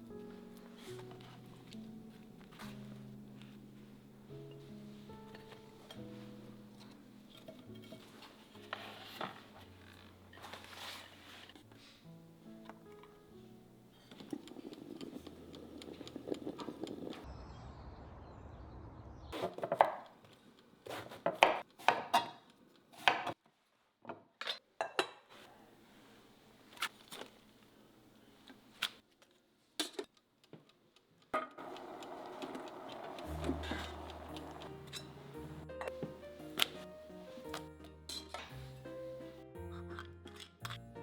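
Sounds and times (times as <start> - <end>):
dishes and utensils clinking: 5.3 - 9.6, 38.1 - 38.8.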